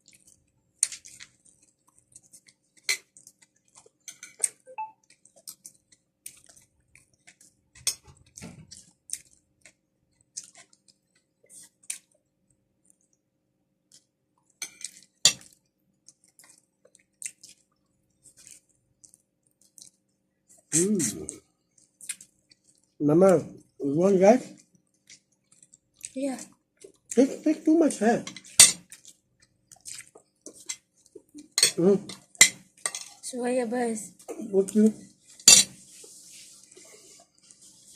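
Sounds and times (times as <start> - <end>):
wet chewing and lip smacking: 0.0 - 12.2, 13.9 - 23.0, 24.6 - 27.2, 28.8 - 32.4.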